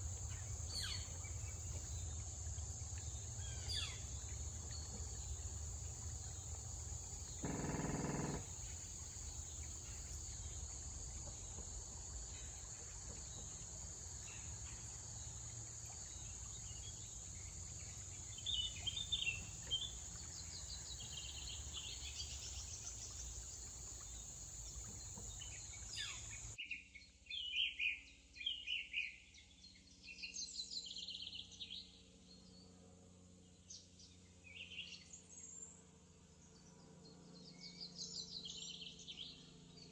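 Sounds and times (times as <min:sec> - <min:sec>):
insect chorus: 0:00.0 - 0:26.6
bird chirps: 0:07.2 - 0:10.6.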